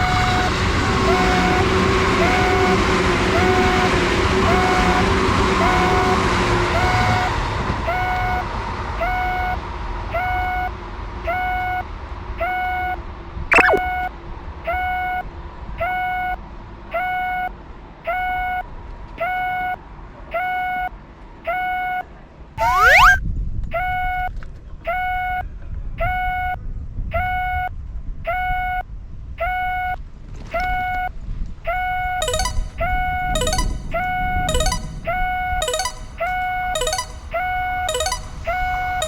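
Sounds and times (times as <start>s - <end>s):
sharp falling squeal: 13.5s - 13.8s, 22.6s - 23.2s, 32.2s - 38.7s
railroad crossing bell ringing: 32.2s - 39.0s.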